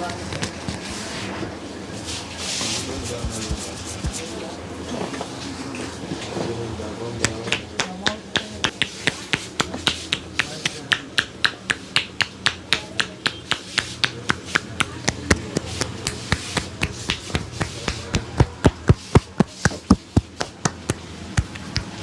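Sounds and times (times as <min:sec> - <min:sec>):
hands tapping in percussion massage: 0:03.1 - 0:04.3, 0:07.2 - 0:22.0.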